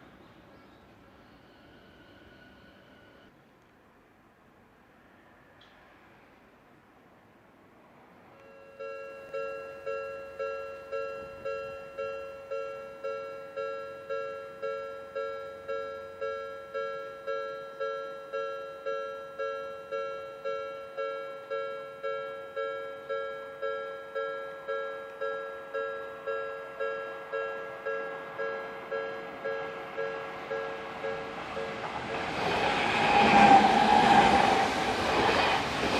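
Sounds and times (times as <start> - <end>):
level crossing warning bell: 8.4 - 31.8.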